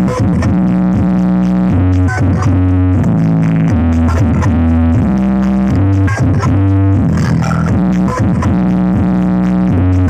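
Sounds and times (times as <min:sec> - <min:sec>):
electronic dance music with synth bass: 0:00.0 - 0:10.0.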